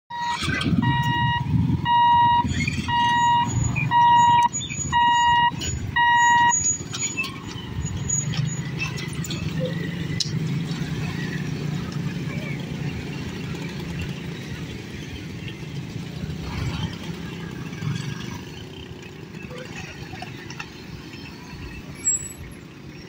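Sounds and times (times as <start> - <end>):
electronic warning beeps: 0.1 - 8.4
low rumble of vehicle engines: 0.1 - 23.0.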